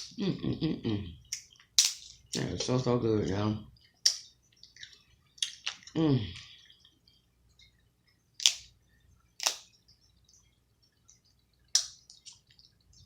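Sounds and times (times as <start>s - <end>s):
crab shells cracking: 1.3s - 2.5s, 4.0s - 6.5s, 8.4s - 8.8s, 9.4s - 9.8s, 11.7s - 12.7s.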